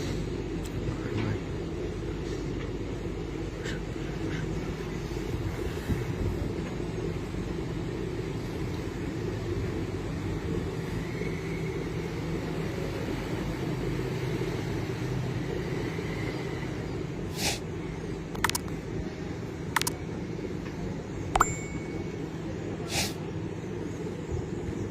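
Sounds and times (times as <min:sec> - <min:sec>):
sharp clicks and knocks: 0:18.3 - 0:18.7, 0:19.8 - 0:20.0.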